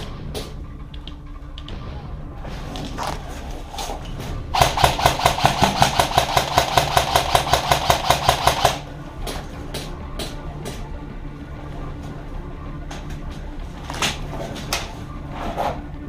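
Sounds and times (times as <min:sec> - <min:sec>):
airsoft gun shots: 0:04.6 - 0:08.9.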